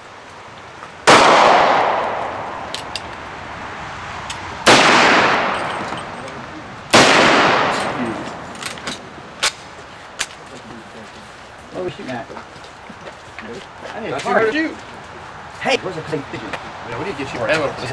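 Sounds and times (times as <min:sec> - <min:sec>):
gunshots: 0:01.0 - 0:02.7, 0:04.6 - 0:06.0, 0:06.9 - 0:08.5.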